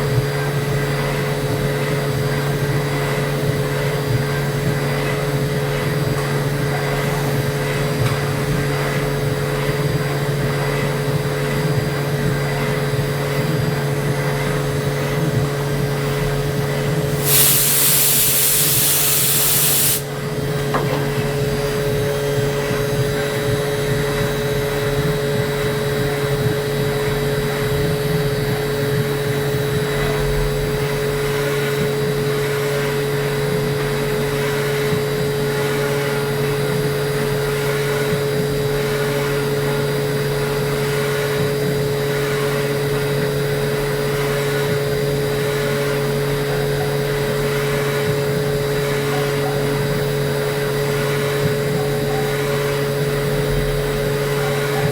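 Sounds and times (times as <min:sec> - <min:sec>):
milling machine hum and whine: 0:00.0 - 0:54.9
loud hiss: 0:17.1 - 0:20.2.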